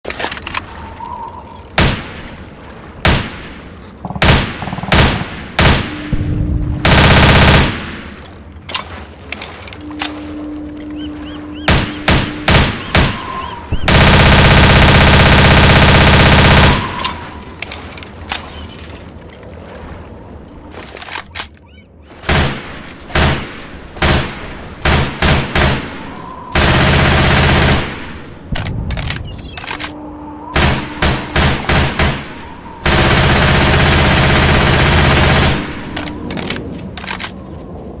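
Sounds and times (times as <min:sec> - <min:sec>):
submachine gun firing bursts: 0:13.9 - 0:16.8.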